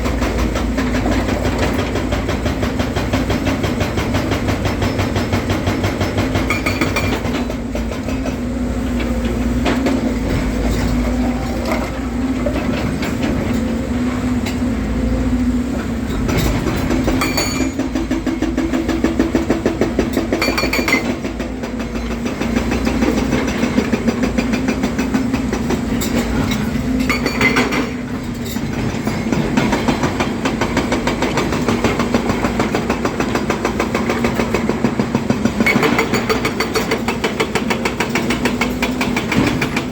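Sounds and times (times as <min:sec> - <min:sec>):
excavator diesel engine running: 0:00.0 - 0:39.9
sharp metal clanks and knocks: 0:16.1 - 0:18.3, 0:19.9 - 0:22.2, 0:25.0 - 0:34.7.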